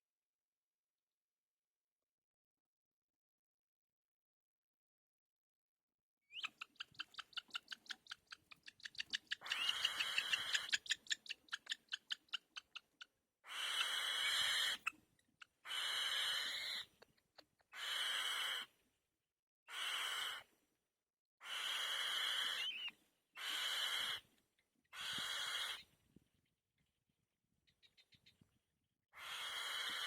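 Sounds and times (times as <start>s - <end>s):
nestling bird hissing begging calls: 9.4s - 11.0s, 13.5s - 14.8s, 15.7s - 16.8s, 17.8s - 18.7s, 19.7s - 20.5s, 21.4s - 24.2s, 25.0s - 25.8s, 29.2s - 30.0s.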